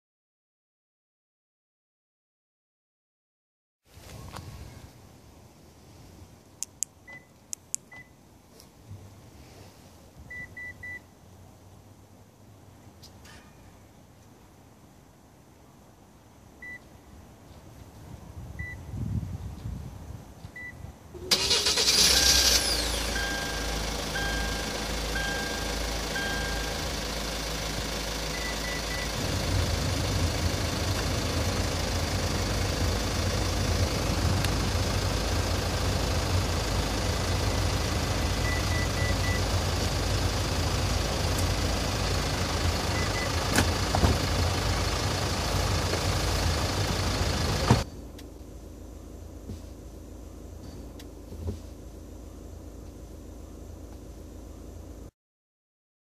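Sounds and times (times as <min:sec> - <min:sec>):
car engine cranking and idling: 0:20.4 - 0:55.1
short beeps: 0:23.1 - 0:26.9, 0:28.4 - 0:29.2.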